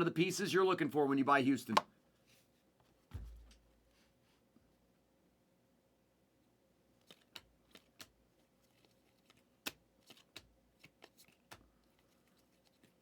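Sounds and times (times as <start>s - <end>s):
trading cards being flipped: 7.0s - 13.0s.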